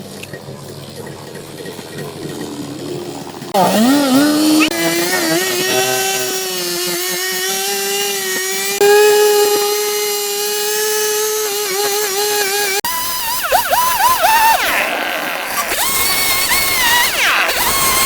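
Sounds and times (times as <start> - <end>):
power tool motor whining: 0.0 - 18.0.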